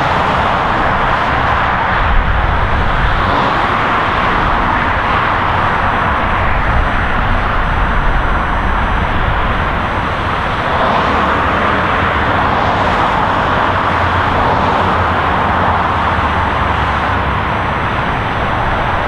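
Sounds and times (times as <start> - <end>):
highway traffic: 0.0 - 19.0.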